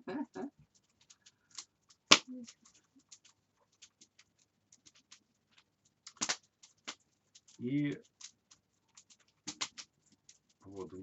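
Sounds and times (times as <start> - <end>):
wood fire crackling: 0.0 - 11.0
loud fire snap: 1.0 - 5.2, 6.0 - 8.3, 9.0 - 11.0.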